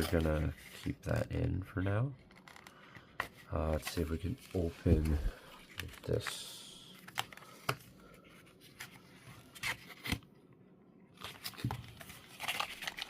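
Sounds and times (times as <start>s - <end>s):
packaging scrapes and rustles: 11.2s - 13.0s.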